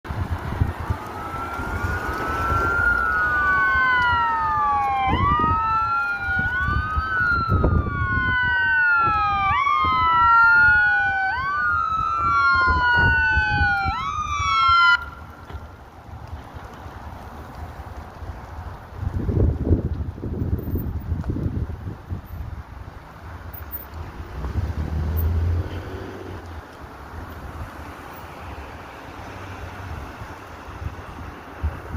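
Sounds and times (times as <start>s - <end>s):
low vehicle rumble: 0.0s - 31.9s
emergency siren wailing: 0.1s - 16.4s.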